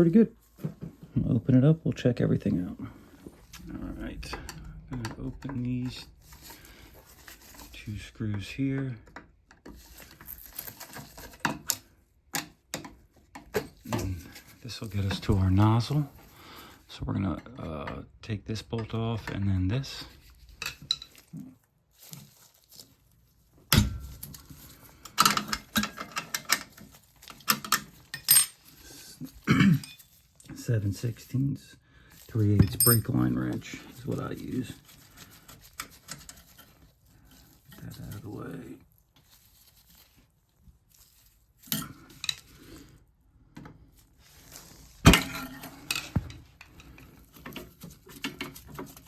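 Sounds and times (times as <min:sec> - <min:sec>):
metal tools clinking and knocking: 0:24.0 - 0:30.6, 0:32.4 - 0:33.8.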